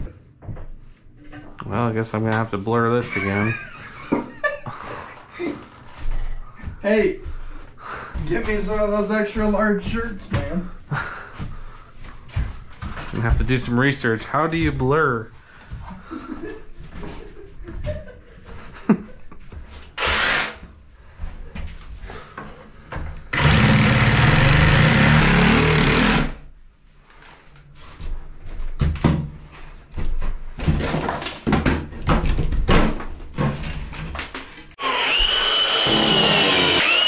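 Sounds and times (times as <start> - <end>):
power tool motor running: 20.0 - 20.6, 23.3 - 26.4, 34.8 - 37.0.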